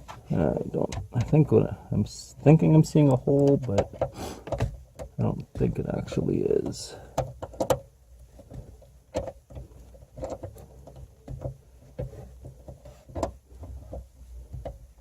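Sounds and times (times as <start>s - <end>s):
hands handling car speaker: 0.0s - 15.0s.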